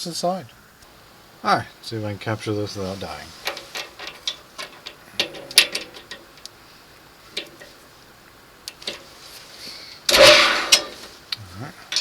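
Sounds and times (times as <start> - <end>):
light handling clicks and knocks: 3.4 - 6.6, 7.3 - 7.8, 8.6 - 9.2.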